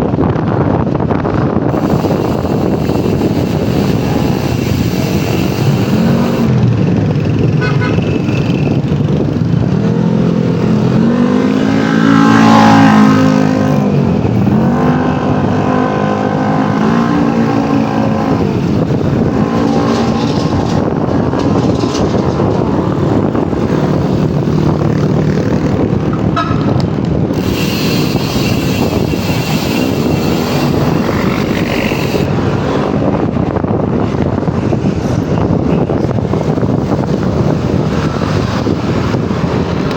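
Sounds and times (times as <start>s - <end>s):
bicycle freehub buzzing: 1.7s - 10.0s, 11.5s - 32.7s.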